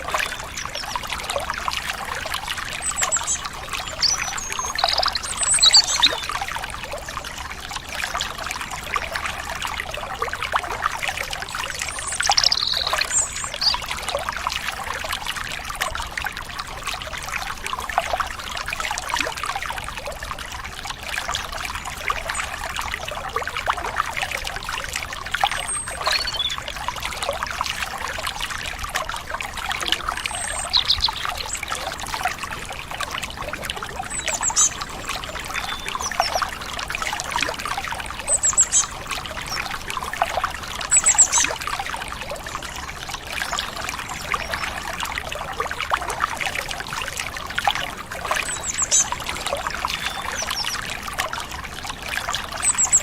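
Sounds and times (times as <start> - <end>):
stream water trickling: 0.0 - 53.0
high bird chirps: 3.9 - 6.3, 12.0 - 13.8, 26.0 - 26.6, 30.3 - 31.6.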